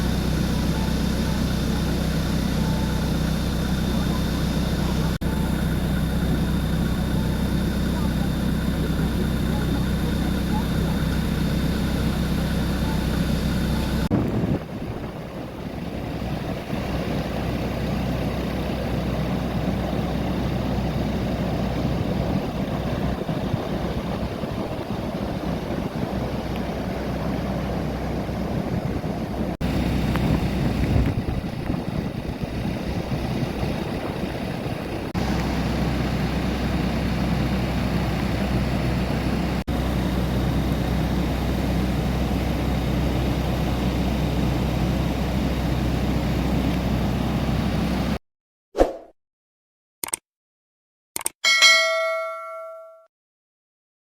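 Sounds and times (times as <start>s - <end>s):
steady low hum: 0.0s - 17.6s
strong wind: 14.0s - 17.2s, 21.0s - 39.6s.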